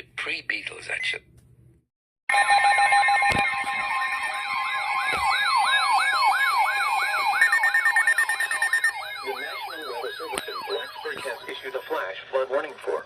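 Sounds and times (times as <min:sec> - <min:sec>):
wailing siren sweeps: 0:02.3 - 0:12.2
steady alarm tones: 0:02.3 - 0:13.0
fast-pulsing beep: 0:06.9 - 0:12.2.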